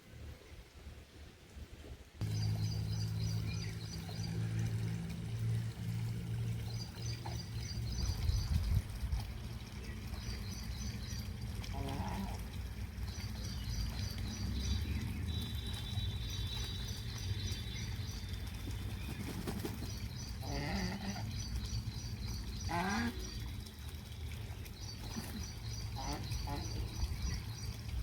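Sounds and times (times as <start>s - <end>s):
low steady rumble: 0.0s - 28.0s
ducks calling: 25.2s - 27.0s.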